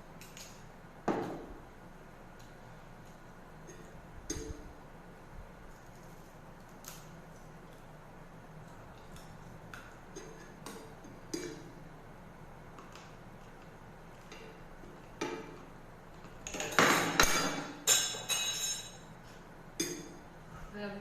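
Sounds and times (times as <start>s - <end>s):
dishes and utensils clinking: 16.5s - 19.1s.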